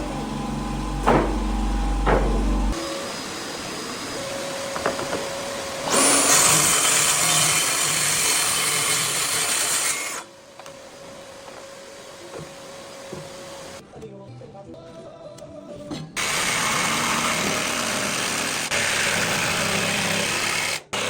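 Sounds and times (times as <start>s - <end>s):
power tool working wood: 0.0s - 10.3s, 16.2s - 21.0s.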